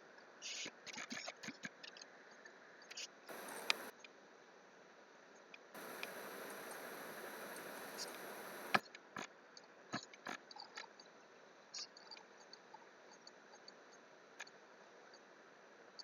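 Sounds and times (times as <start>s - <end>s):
computer mouse clicks: 3.3s - 3.9s, 5.8s - 8.8s
steady hiss: 3.3s - 3.9s, 5.8s - 8.8s.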